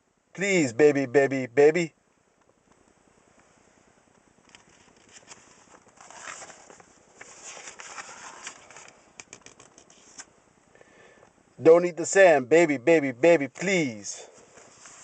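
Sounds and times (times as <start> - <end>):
paper rustling: 4.5 - 10.3, 14.4 - 15.0.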